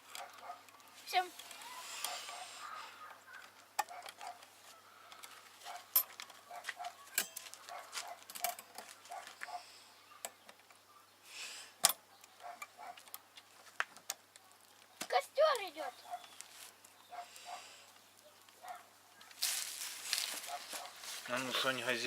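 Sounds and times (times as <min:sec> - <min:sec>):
wood fire crackling: 0:12.2 - 0:22.0.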